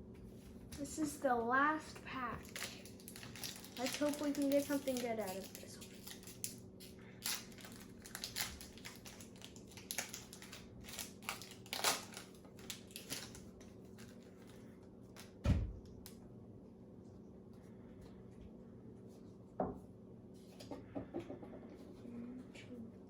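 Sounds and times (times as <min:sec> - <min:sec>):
foil wrapper crinkling: 0:02.3 - 0:15.4.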